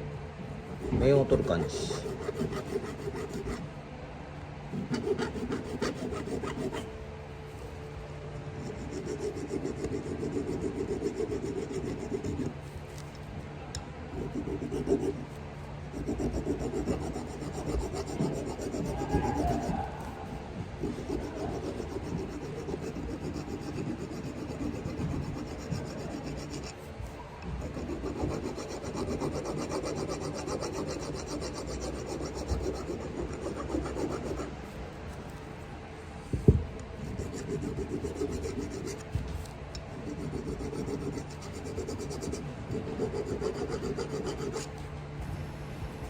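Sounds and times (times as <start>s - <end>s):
file rasping on brake pad: 0.8s - 3.7s, 4.7s - 6.9s, 8.6s - 12.6s, 14.1s - 15.2s, 15.9s - 26.9s, 27.5s - 34.6s, 37.0s - 44.8s.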